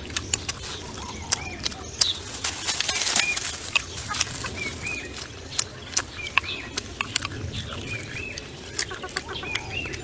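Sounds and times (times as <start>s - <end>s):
sharp clicks and crackles: 0.0s - 10.0s
small birds chirping: 0.0s - 10.0s.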